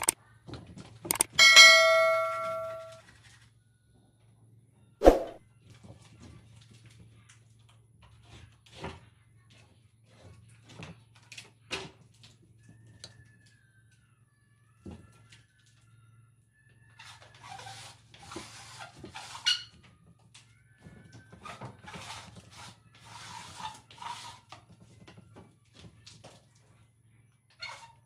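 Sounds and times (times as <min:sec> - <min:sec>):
tools knocking and scraping: 0:01.1 - 0:03.0
struck metal ringing: 0:01.2 - 0:03.0.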